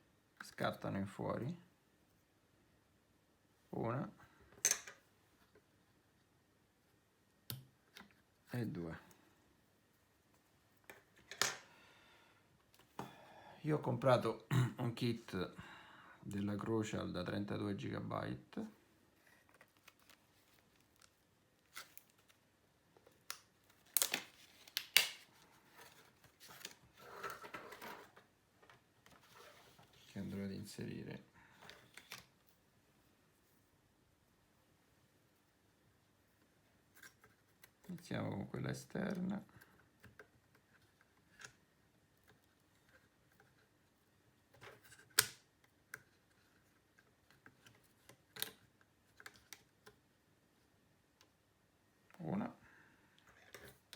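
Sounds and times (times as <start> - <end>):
plastic packaging clicking and snapping: 23.0 - 25.3.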